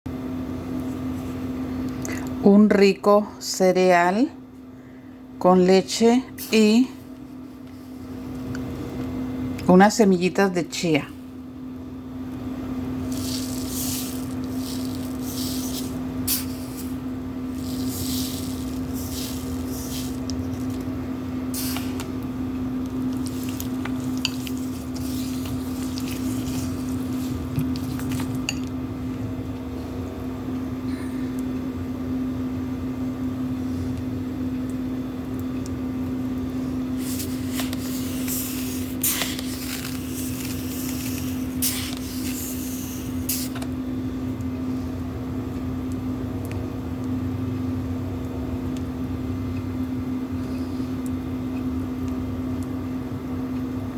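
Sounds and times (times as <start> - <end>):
low electrical hum: 0.1 - 53.9
cereal pouring into a bowl: 13.0 - 20.7, 37.0 - 42.9.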